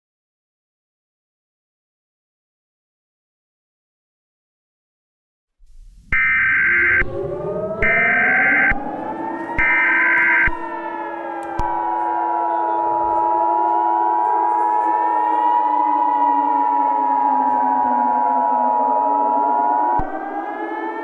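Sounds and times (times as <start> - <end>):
civil defense siren wailing: 6.1 - 21.0
two-tone attention signal: 6.2 - 8.8.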